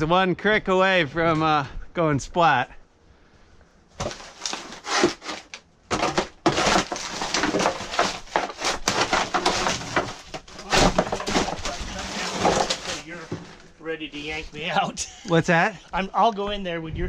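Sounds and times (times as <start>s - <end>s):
wood and debris crunching: 4.0s - 14.4s.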